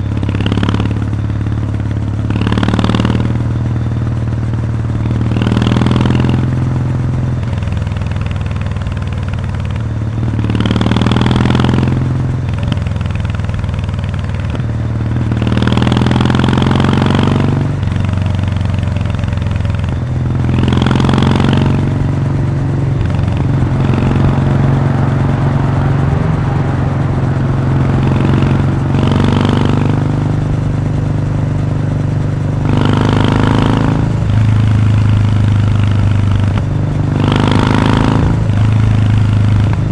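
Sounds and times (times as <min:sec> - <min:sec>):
motorcycle exhaust: 0:00.0 - 0:39.9
rushing noise: 0:18.6 - 0:39.9.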